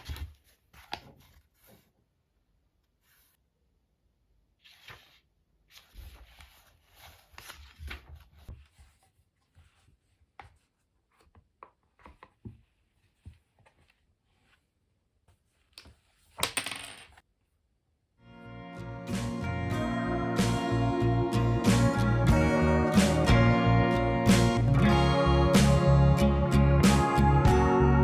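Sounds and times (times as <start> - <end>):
soft rustling: 4.6 - 16.4.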